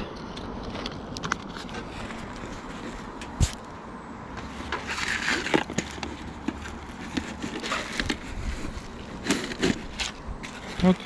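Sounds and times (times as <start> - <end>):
scraping: 4.4 - 11.0.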